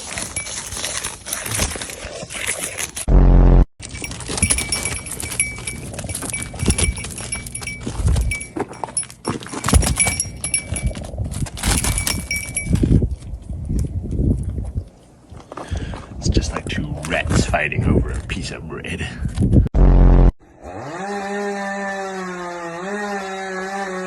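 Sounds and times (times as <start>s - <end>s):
small bell jingling: 0.0s - 1.2s, 3.8s - 12.9s
hooves clattering: 0.0s - 2.2s, 3.8s - 12.9s
loud low hum: 3.1s - 3.7s, 19.8s - 20.3s.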